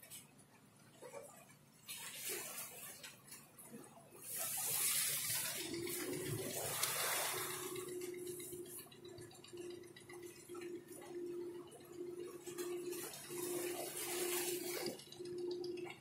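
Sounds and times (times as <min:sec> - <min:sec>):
water splashing: 0:00.0 - 0:16.0
steady hum: 0:03.3 - 0:16.0.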